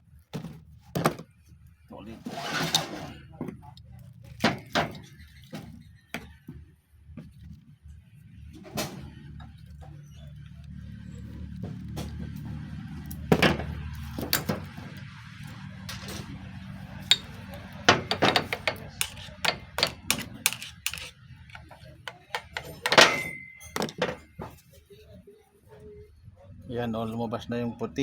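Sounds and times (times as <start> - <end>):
metallic clacks of engine parts: 13.0 - 15.0, 15.8 - 24.6.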